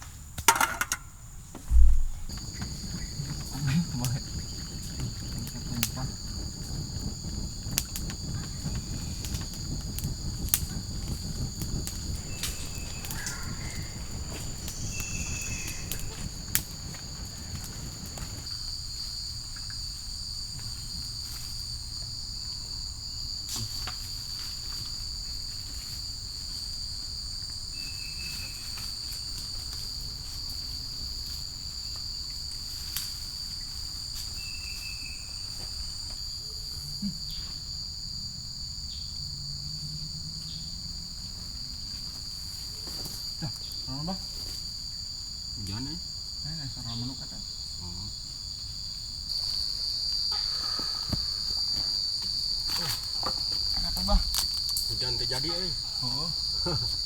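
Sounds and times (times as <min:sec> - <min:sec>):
insects buzzing: 0:00.0 - 0:57.0
low rumble: 0:01.7 - 0:18.5.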